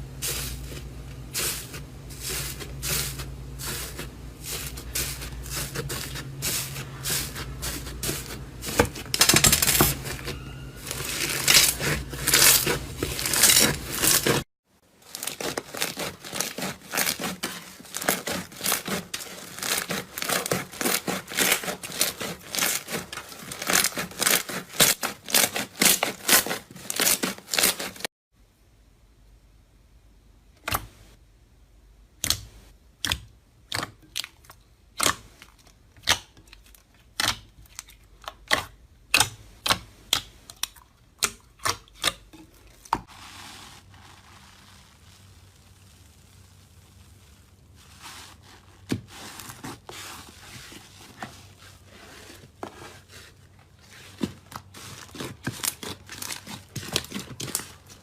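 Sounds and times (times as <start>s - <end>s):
slime crackling and popping: 10.9s - 14.4s, 15.0s - 28.0s, 43.9s - 50.1s, 54.4s - 58.0s.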